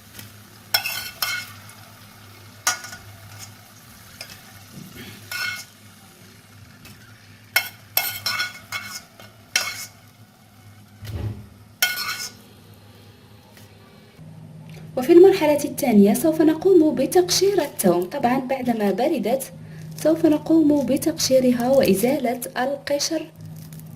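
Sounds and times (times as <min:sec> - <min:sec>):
light sizzling oil: 0:00.0 - 0:14.1, 0:15.6 - 0:23.9
utensil scraping and clinking pan: 0:05.3 - 0:05.7, 0:07.6 - 0:10.0, 0:11.8 - 0:12.4.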